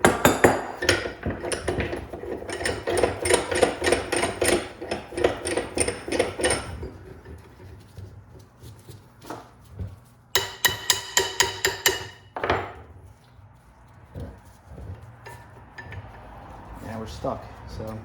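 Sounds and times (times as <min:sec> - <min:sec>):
hammer striking steel: 0:10.4 - 0:12.7.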